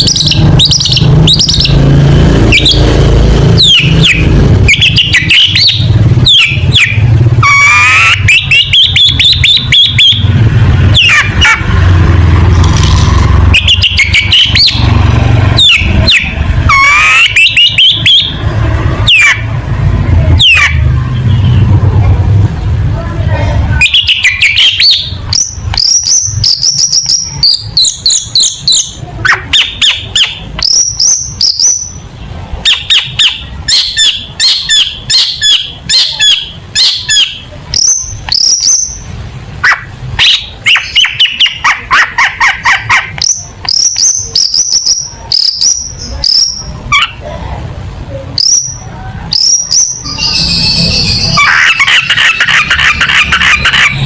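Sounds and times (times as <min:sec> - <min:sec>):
shrike singing whistled notes: 0:00.0 - 0:01.8, 0:02.4 - 0:02.9, 0:03.6 - 0:10.3, 0:13.5 - 0:14.9, 0:15.6 - 0:18.4, 0:23.8 - 0:39.2, 0:43.2 - 0:47.2, 0:48.4 - 0:54.0.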